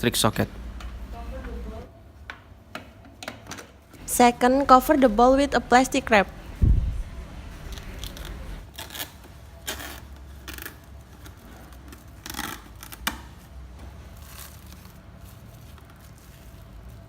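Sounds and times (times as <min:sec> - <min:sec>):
cling wrap crinkling: 0:07.5 - 0:17.0
cling wrap snapping: 0:07.7 - 0:13.5.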